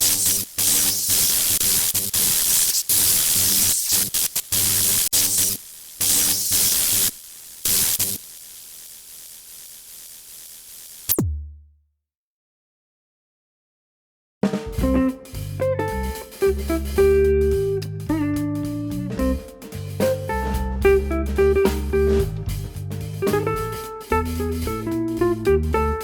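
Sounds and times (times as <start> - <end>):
static-like noise bursts: 0.0 - 11.2
drum machine beat: 14.4 - 26.0.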